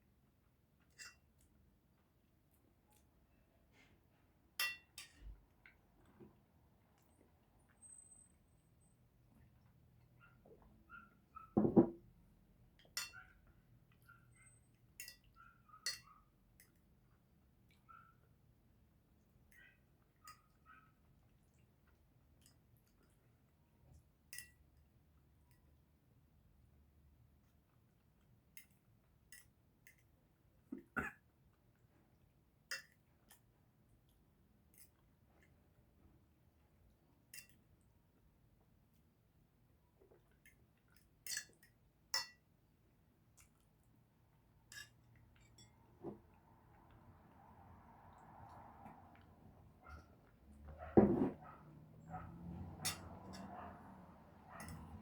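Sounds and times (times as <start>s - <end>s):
fork clinking against plate: 4.6s - 5.2s, 12.8s - 13.3s, 15.0s - 16.8s, 41.2s - 42.4s, 44.7s - 46.2s, 52.8s - 53.6s.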